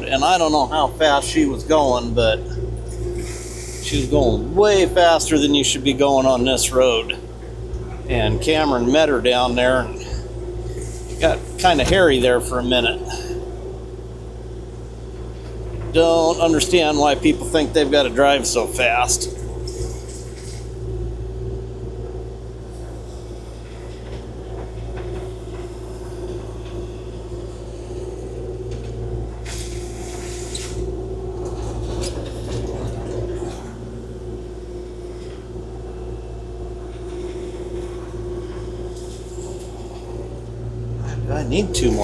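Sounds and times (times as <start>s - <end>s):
diesel excavator engine running: 0.0s - 42.0s
machine scraping knocks: 8.2s - 13.0s.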